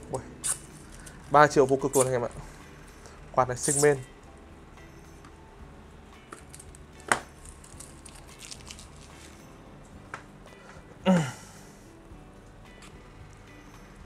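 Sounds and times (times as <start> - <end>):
packaging crinkling: 7.4 - 9.4.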